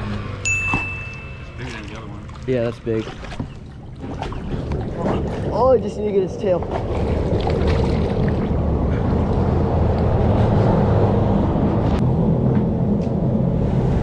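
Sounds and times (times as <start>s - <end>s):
wind buffeting microphone: 3.7s - 14.0s.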